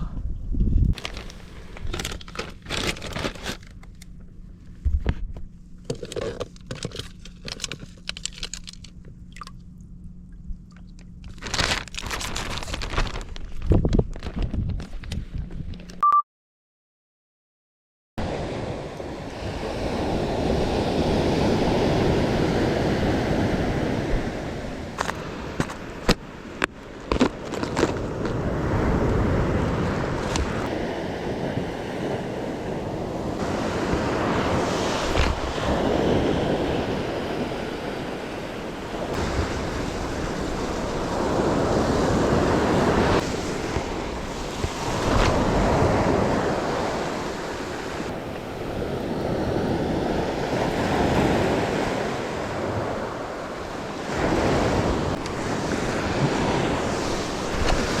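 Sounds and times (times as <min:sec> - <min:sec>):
wind buffeting microphone: 0:00.0 - 0:01.0, 0:27.8 - 0:58.0
surf breaking on beach: 0:18.2 - 0:26.4, 0:27.9 - 0:58.0.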